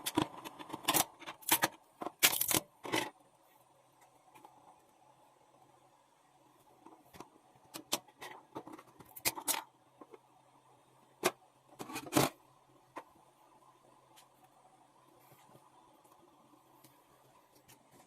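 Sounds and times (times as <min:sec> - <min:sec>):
small hard objects clicking and knocking: 0:00.0 - 0:03.2
faint steady hum: 0:00.0 - 0:18.0.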